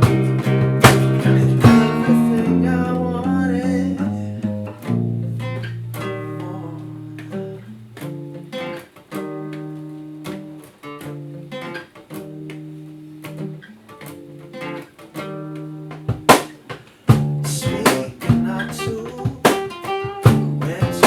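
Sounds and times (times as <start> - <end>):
acoustic guitar chords: 0.0 - 21.0.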